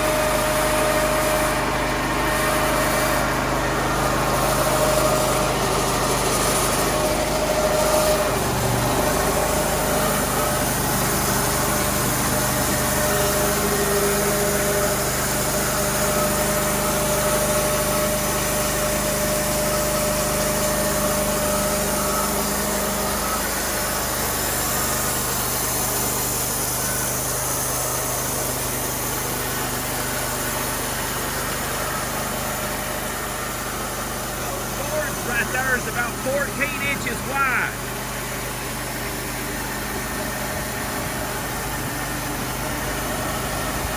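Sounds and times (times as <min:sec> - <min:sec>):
sawmill engine running: 0:00.0 - 0:43.9.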